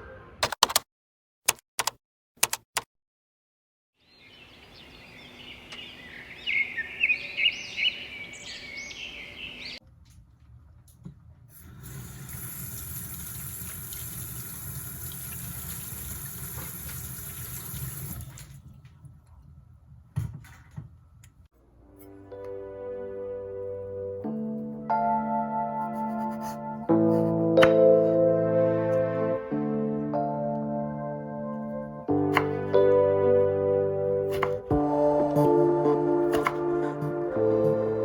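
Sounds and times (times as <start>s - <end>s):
sharp clicks: 1.5s - 2.9s
birds chirping: 4.0s - 9.8s
running tap water: 11.5s - 18.7s.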